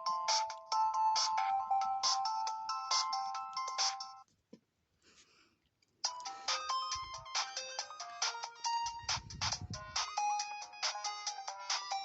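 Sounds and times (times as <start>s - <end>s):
phone ringtone melody: 0.0s - 4.2s, 6.1s - 9.2s, 9.8s - 12.0s.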